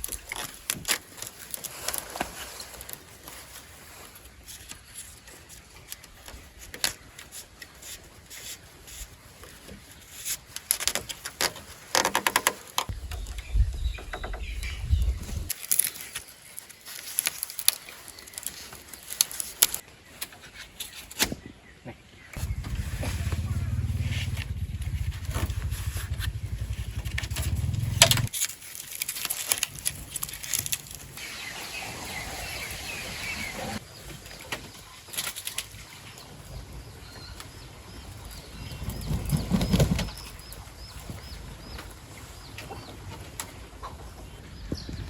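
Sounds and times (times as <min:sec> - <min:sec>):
bird chirping: 0:12.9 - 0:16.6, 0:20.0 - 0:28.3, 0:31.1 - 0:34.1
motor running: 0:22.4 - 0:28.3.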